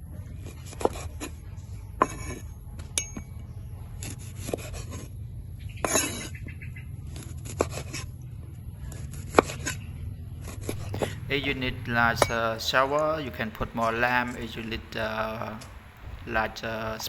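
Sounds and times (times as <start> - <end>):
steady low hum: 0.0 - 17.0
scraping rustle: 3.9 - 16.3
utensils and dishes clinking: 10.7 - 16.6.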